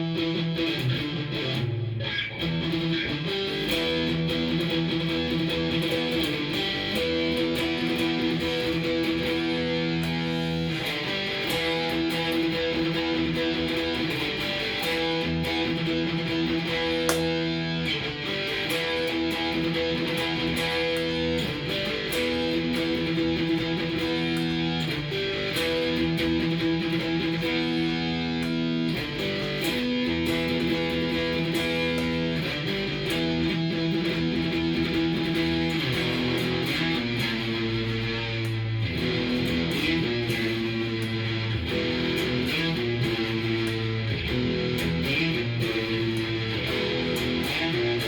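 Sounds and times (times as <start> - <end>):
electric guitar chords: 0.0 - 48.0.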